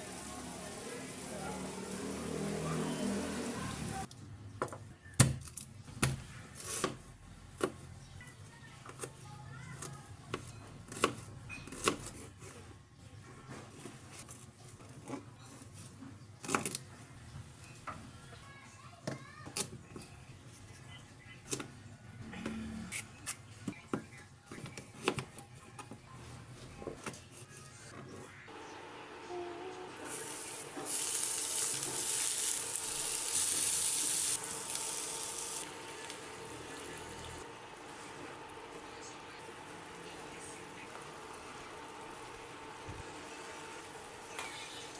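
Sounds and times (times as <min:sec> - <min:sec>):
food sizzling in a pan: 0:00.0 - 0:04.1, 0:30.0 - 0:39.9.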